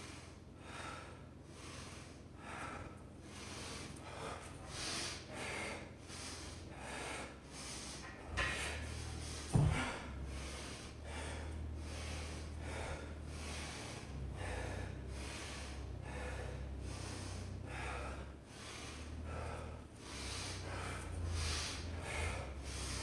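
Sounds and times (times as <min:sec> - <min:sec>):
low steady hum: 0:00.0 - 0:23.0
person breathing hard: 0:00.0 - 0:23.0
thump: 0:09.5 - 0:09.9.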